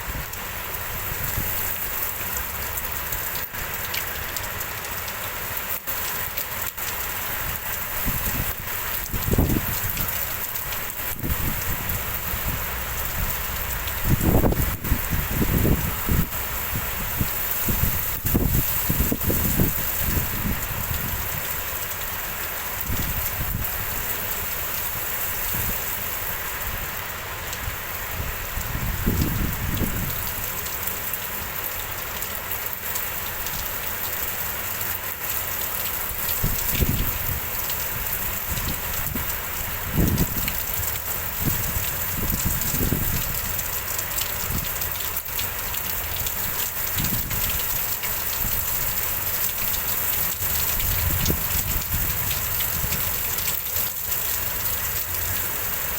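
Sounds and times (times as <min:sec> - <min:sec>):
steady rain falling: 0:00.0 - 0:55.9
wind gusts on microphone: 0:07.4 - 0:10.2, 0:10.9 - 0:21.6, 0:22.8 - 0:24.1, 0:27.6 - 0:30.5, 0:36.2 - 0:43.6, 0:46.8 - 0:49.0, 0:50.3 - 0:53.5.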